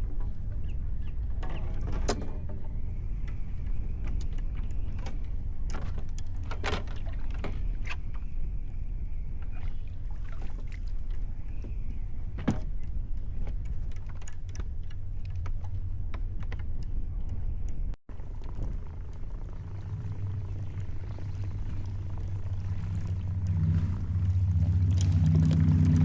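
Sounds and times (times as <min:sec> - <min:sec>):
low steady rumble: 0:00.0 - 0:26.0
knocks and clicks of gear: 0:01.4 - 0:08.0.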